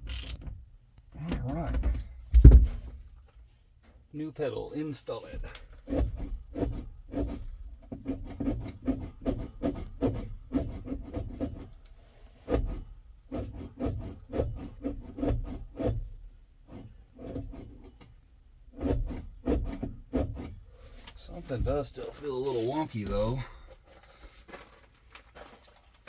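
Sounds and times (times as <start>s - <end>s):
pedal linkage creaking: 0.0s - 0.5s.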